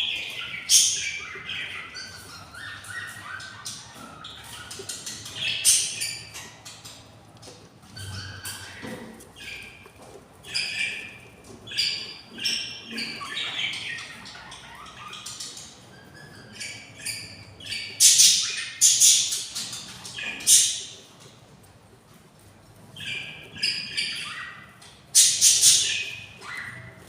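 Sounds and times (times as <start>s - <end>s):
budgerigars chirping and squawking: 0.0s - 21.5s, 22.7s - 27.0s
harsh screechy bird calls: 23.0s - 27.0s.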